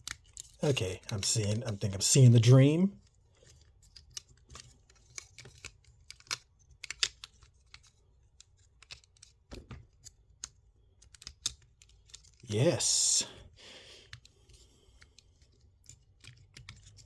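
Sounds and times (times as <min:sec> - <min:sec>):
small plastic clicks: 0:00.0 - 0:01.2, 0:03.0 - 0:12.5, 0:14.0 - 0:17.0.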